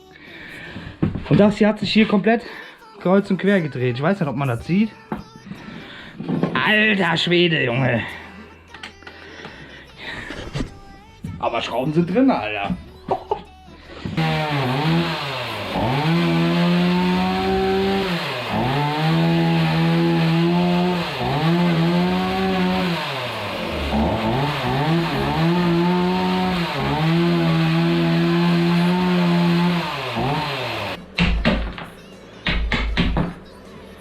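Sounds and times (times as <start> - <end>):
chainsaw cutting wood: 14.0 - 31.8.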